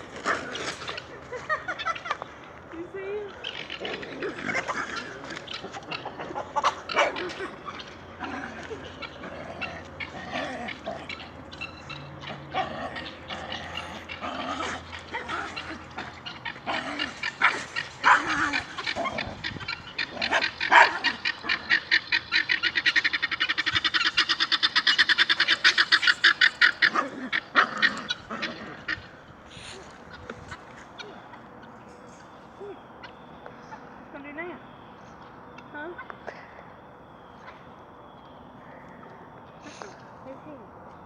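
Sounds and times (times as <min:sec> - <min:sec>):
dog barking and yapping: 0:13.8 - 0:21.2, 0:24.8 - 0:28.8.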